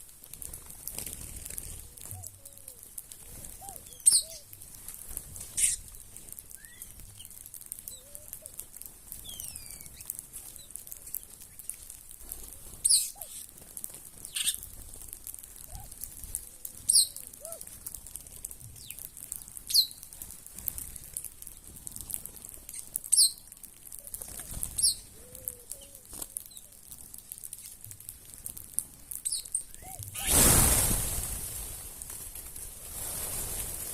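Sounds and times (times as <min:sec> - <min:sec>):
many wings flapping: 0:00.0 - 0:23.0, 0:24.0 - 0:27.6, 0:29.8 - 0:33.9
steady high hiss: 0:00.0 - 0:33.9
small birds chirping: 0:00.4 - 0:30.4
soft low bird calls: 0:01.6 - 0:04.6, 0:05.5 - 0:13.5, 0:14.2 - 0:14.8, 0:15.5 - 0:17.8, 0:22.5 - 0:26.9, 0:29.2 - 0:30.4.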